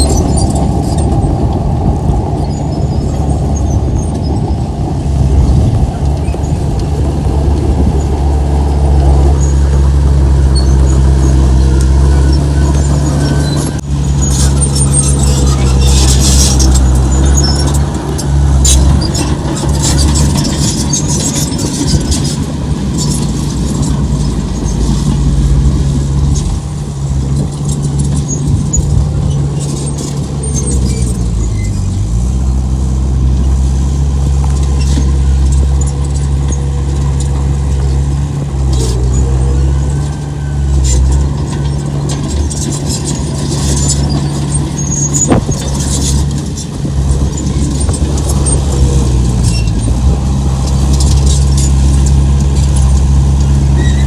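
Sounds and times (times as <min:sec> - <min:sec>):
metallic squeaks and clanks: 0:00.0 - 0:01.7, 0:02.3 - 0:04.7, 0:09.0 - 0:54.0
heavy diesel engine running: 0:00.0 - 0:54.0.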